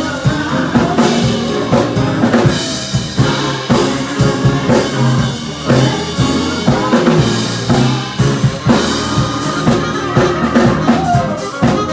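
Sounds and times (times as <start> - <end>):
drum kit beat: 0.0 - 11.9
electric bass guitar line: 0.0 - 11.9
soul band playing: 0.0 - 11.9.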